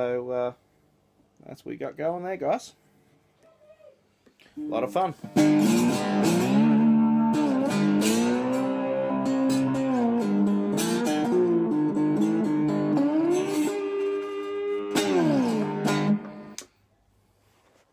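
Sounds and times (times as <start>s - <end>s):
slide guitar: 4.6s - 16.6s.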